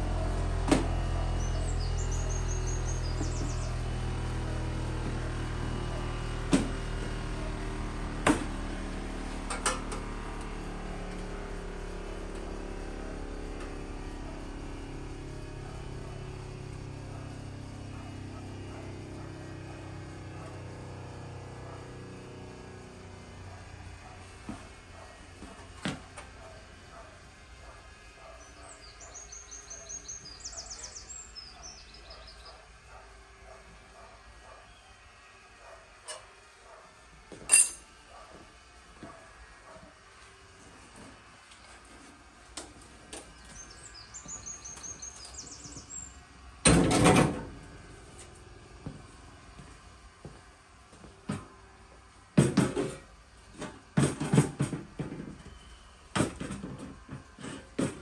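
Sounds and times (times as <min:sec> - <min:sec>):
songbird singing trills: 0:01.4 - 0:03.8, 0:28.4 - 0:32.6, 0:43.3 - 0:46.2.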